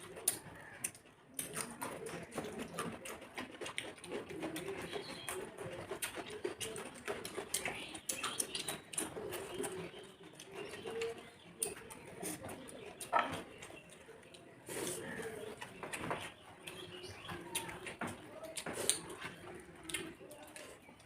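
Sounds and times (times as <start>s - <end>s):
wet chewing clicks and smacks: 0.0s - 21.0s.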